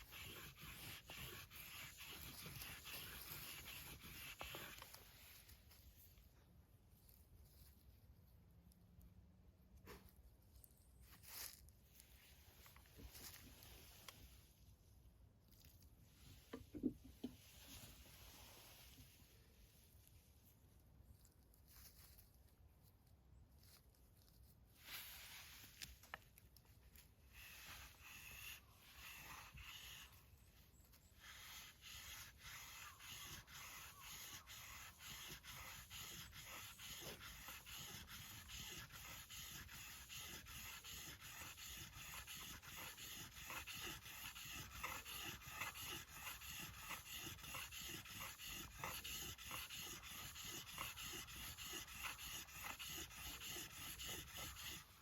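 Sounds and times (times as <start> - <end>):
rubbing sounds: 0.0 - 6.0, 23.6 - 55.0
dog panting: 33.2 - 54.8.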